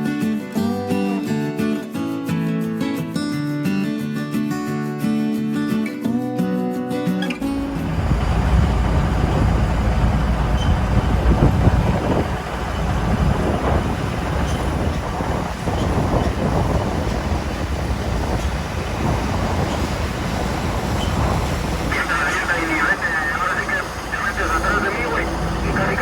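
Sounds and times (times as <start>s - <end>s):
heavy vehicle rumbling and rattling: 7.4s - 26.0s.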